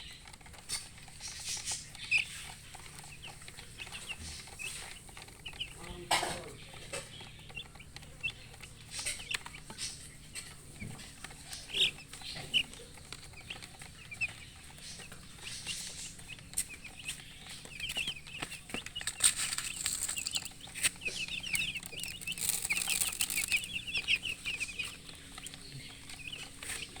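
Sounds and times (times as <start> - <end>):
baby chicks peeping: 0.0 - 27.0
rustling: 16.9 - 27.0.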